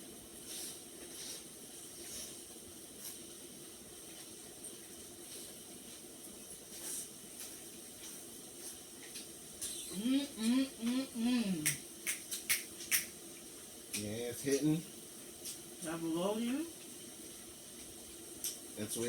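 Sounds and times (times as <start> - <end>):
broth simmering: 0.0 - 19.0
mouth sounds of eating: 9.0 - 13.0.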